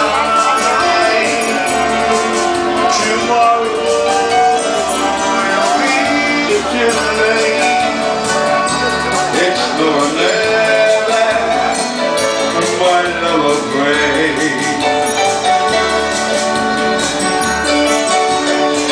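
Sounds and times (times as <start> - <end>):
band music: 0.0 - 18.9.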